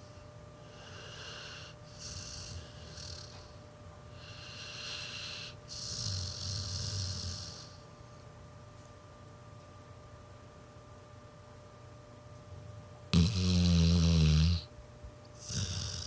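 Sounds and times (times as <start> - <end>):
dog snoring: 0.0 - 7.9, 13.1 - 14.7, 15.4 - 16.0.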